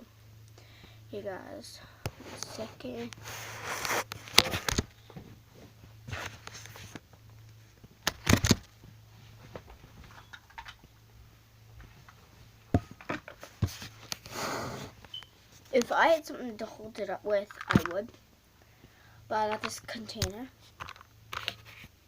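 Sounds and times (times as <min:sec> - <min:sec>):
low steady hum: 0:00.0 - 0:22.0
handling knocks and rustles: 0:11.7 - 0:14.2.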